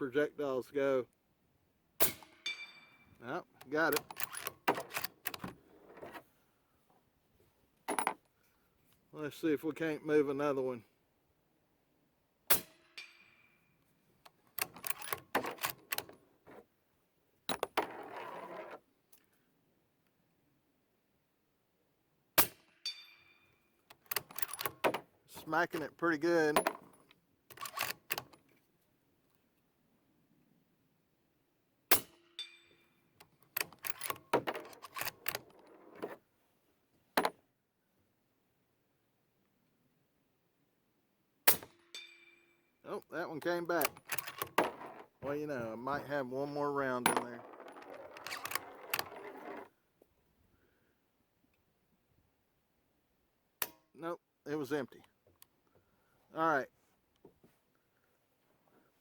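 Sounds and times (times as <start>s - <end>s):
bullet hitting steel plate: 2.0s - 3.0s, 22.4s - 23.4s, 31.9s - 32.8s, 41.5s - 42.6s
rifle bolt clicking and rattling: 3.6s - 6.2s, 14.3s - 16.6s, 23.9s - 25.1s, 25.7s - 28.6s, 33.2s - 36.2s, 43.7s - 45.2s, 47.0s - 49.7s
rifle bolt clicking: 27.5s - 28.4s.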